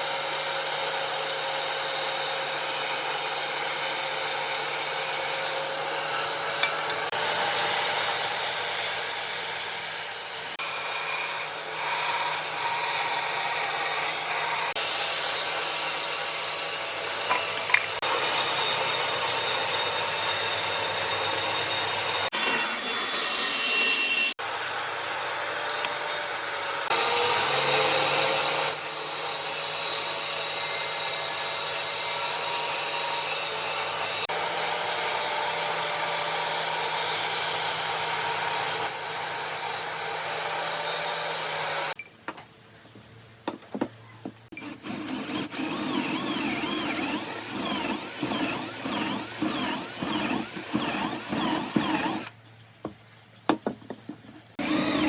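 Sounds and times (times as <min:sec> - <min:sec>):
power tool motor running: 0:00.6 - 0:39.0, 0:44.5 - 0:52.3, 0:54.6 - 0:55.0
power tool starting and stopping: 0:16.7 - 0:39.1, 0:44.6 - 0:52.3, 0:54.6 - 0:55.0.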